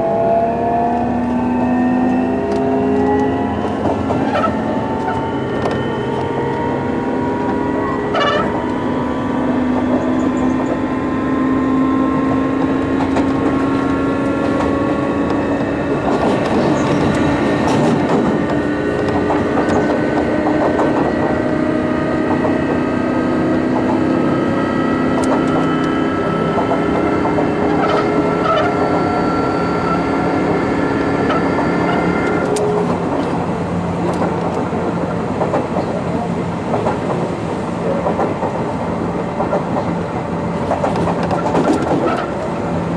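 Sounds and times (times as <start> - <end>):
train traction motors whining: 0.0 - 42.9
wheels clicking over rail joints: 11.6 - 42.7.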